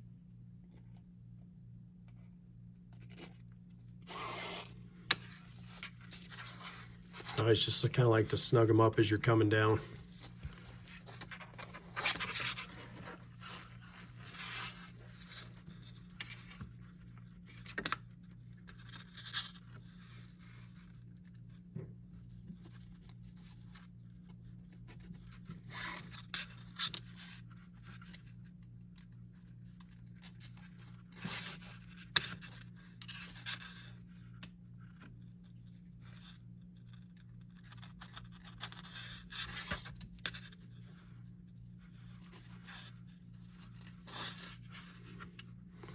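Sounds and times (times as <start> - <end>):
steady low hum: 0.0 - 15.8
holster strap scraping: 4.0 - 7.4.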